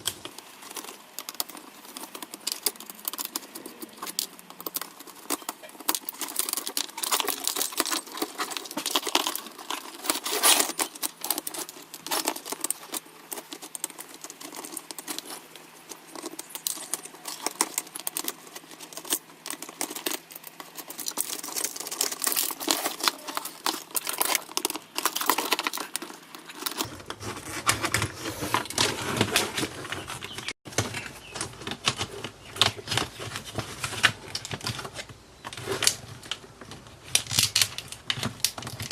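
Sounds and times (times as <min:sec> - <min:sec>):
tools clicking and rattling on parts: 0:00.1 - 0:38.9.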